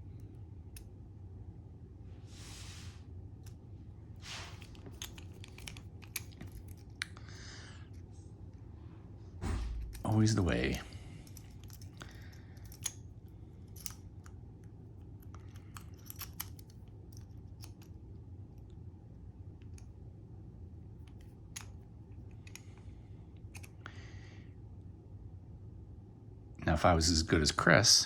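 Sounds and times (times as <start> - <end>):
low steady hum: 0.0 - 28.0
lock pick clicking and scraping: 4.6 - 7.2, 9.7 - 13.0, 13.7 - 14.4, 15.2 - 17.9.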